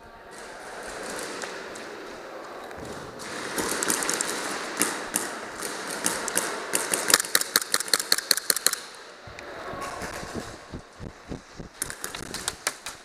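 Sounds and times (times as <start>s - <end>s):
airsoft guns firing: 3.2s - 9.0s.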